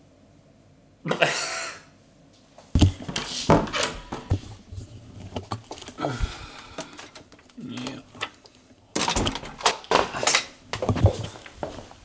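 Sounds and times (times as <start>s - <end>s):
objects knocking and clattering: 2.8s - 12.0s.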